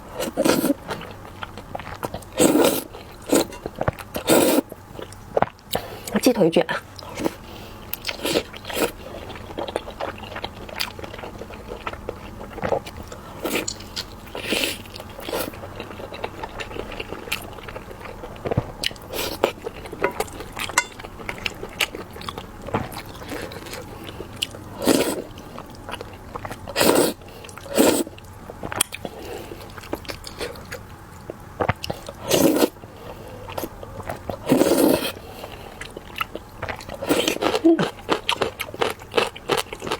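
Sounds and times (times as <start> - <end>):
chewing and biting food: 8.0 - 32.7, 35.8 - 39.9.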